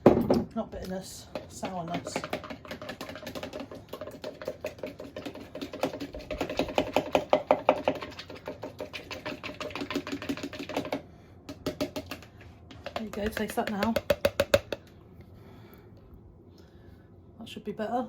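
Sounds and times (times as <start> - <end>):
utensil whisking in a bowl: 1.2 - 14.8.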